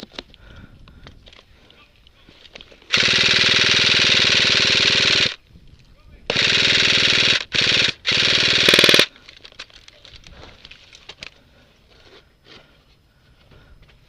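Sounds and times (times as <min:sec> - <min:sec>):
airsoft rifle firing full-auto: 0:02.9 - 0:05.4, 0:06.3 - 0:09.1.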